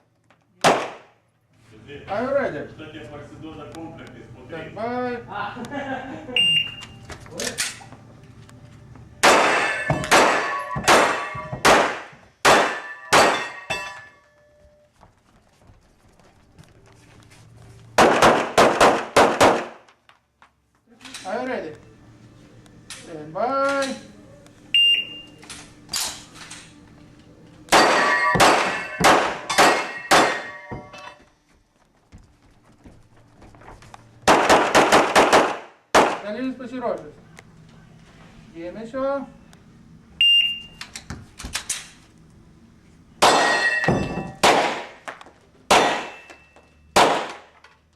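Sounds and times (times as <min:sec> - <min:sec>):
handgun shots with ringing tail: 0:09.2 - 0:13.9, 0:27.7 - 0:30.8, 0:34.3 - 0:36.3, 0:43.2 - 0:45.0, 0:45.7 - 0:46.4, 0:47.0 - 0:47.5.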